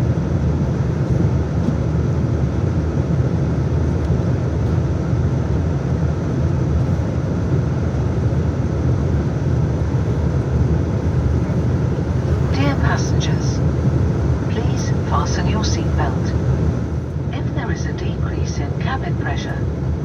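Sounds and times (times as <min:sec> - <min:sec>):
airliner cabin rumble and air noise: 0:00.0 - 0:20.0.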